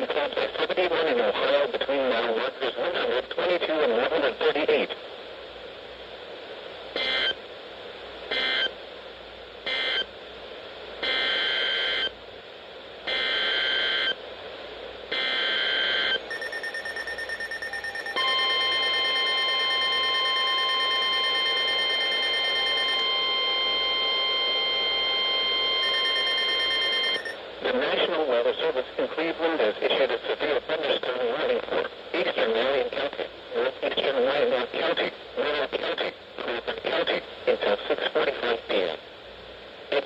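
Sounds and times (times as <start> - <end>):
weather radio alert alarms: 9.7 - 10.0, 15.1 - 27.4.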